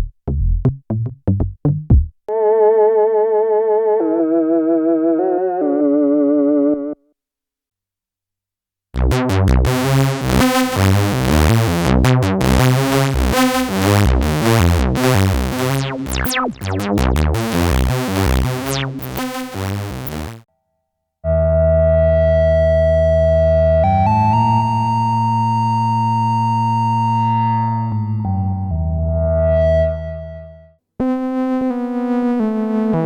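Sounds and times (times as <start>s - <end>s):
sustained synthesizer tone: 9.0s - 20.4s
synthesizer sequenced pattern: 9.0s - 20.4s.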